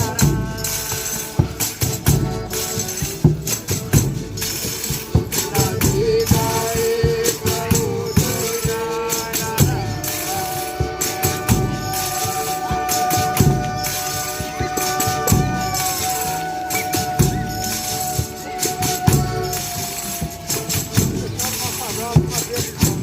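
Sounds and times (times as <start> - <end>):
drum beats: 0.0 - 23.0
tambourines jingling: 0.0 - 23.0
long held notes: 8.0 - 22.0.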